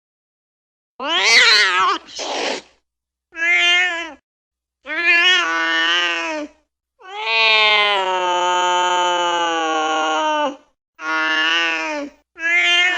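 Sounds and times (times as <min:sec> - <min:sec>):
angry cat yowling: 0:01.0 - 0:02.2, 0:03.4 - 0:04.2, 0:04.9 - 0:12.9.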